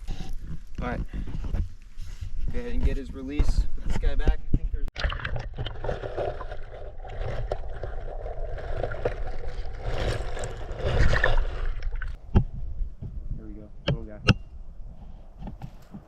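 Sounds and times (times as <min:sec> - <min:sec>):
water sloshing and gurgling: 0:04.9 - 0:12.7
low wind rumble: 0:08.2 - 0:16.0.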